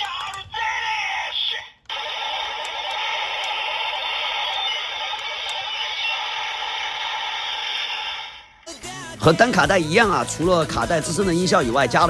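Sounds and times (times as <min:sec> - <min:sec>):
hissing electronic toy sound effect: 0:01.3 - 0:08.7.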